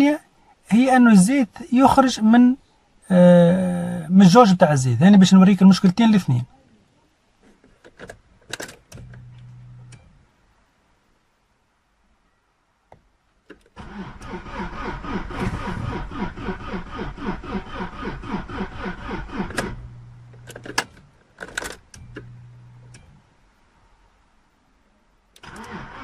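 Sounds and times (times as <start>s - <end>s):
engine cranking on starter: 13.8s - 20.8s, 25.4s - 26.0s.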